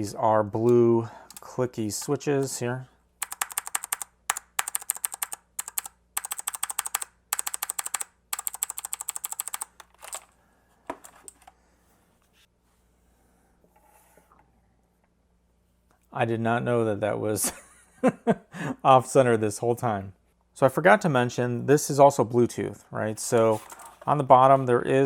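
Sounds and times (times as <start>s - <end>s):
clicky mechanical keyboard typing: 3.2s - 10.2s.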